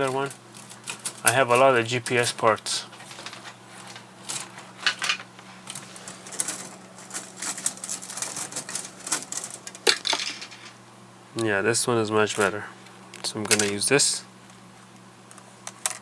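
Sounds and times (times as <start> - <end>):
plastic parts clicking and clattering: 0.0 - 10.8, 15.3 - 16.0.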